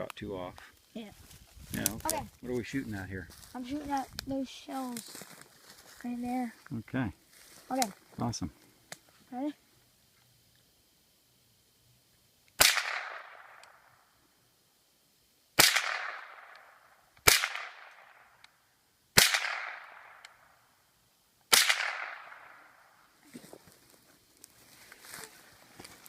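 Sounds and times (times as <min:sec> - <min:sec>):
rifle shots: 0:12.6 - 0:13.6, 0:15.6 - 0:16.5, 0:17.2 - 0:18.2, 0:19.2 - 0:20.2, 0:21.5 - 0:22.7.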